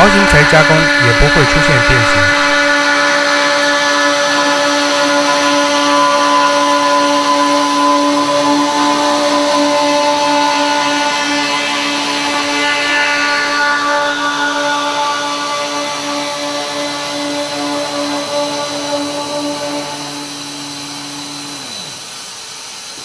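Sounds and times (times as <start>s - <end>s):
circular saw cutting steel: 0.0s - 23.0s.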